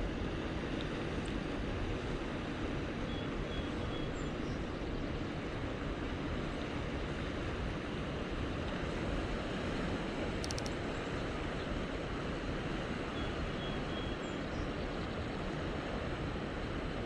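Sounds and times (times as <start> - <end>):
faint clicking: 10.4 - 10.8.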